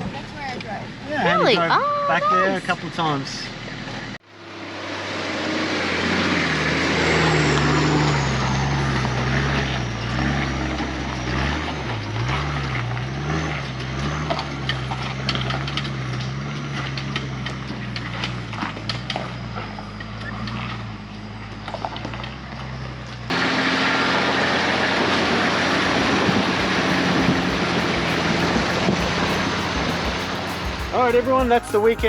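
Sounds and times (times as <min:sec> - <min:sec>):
car engine revving while driving: 0:05.4 - 0:21.0, 0:21.8 - 0:30.9.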